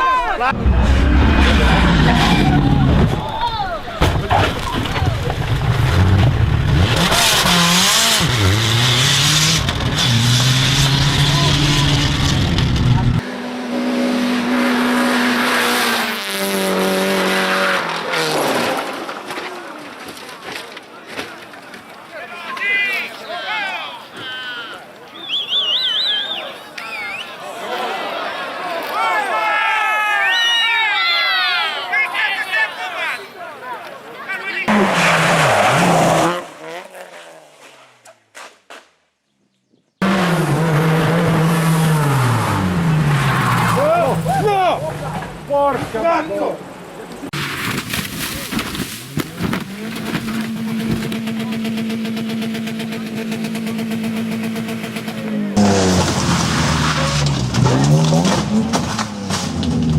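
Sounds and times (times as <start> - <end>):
tyres rushing on road: 0.0 - 37.7, 40.0 - 59.9
rally car engine at high revs: 5.6 - 19.2, 34.7 - 37.3, 40.0 - 45.1, 48.7 - 59.9.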